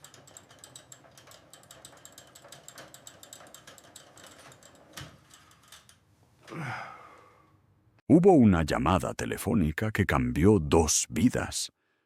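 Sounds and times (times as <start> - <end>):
rapid mechanical clicking: 0.0 - 6.0.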